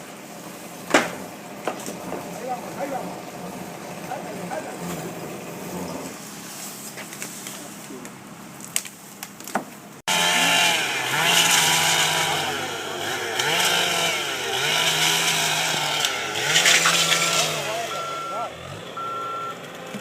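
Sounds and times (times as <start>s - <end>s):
chainsaw running at high revs: 0.6s - 6.2s, 10.1s - 20.0s.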